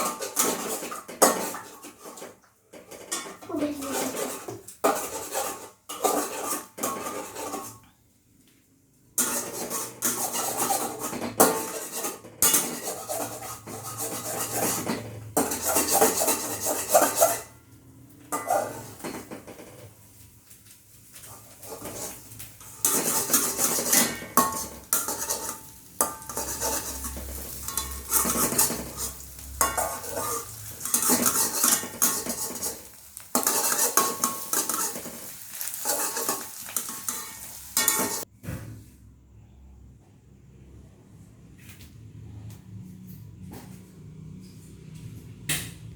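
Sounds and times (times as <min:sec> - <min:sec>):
utensil scraping cookware: 0:00.0 - 0:07.9, 0:09.2 - 0:17.6, 0:18.3 - 0:20.1, 0:21.1 - 0:38.3
eggs sizzling: 0:18.5 - 0:38.3.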